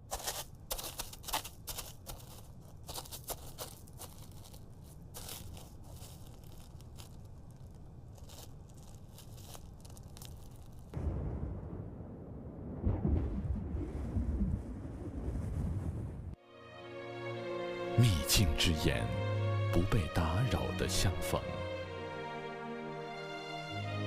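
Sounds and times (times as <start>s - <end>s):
crunching and rustling crackles: 0.0s - 11.0s.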